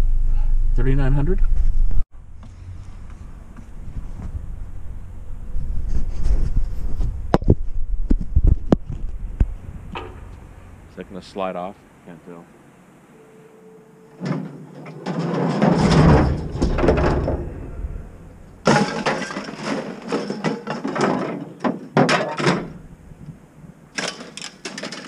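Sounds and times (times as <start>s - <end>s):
scrap metal clattering: 14.1s - 22.8s.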